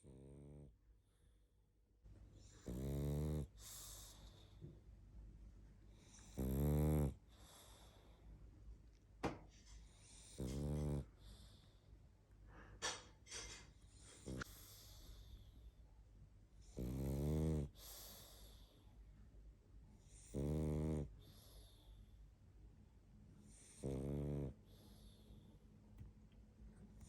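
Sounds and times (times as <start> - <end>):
dog snoring: 0.0 - 0.8, 2.4 - 4.6, 5.9 - 8.1, 9.8 - 11.8, 14.1 - 15.4, 16.6 - 18.8, 20.0 - 22.1, 23.5 - 25.4.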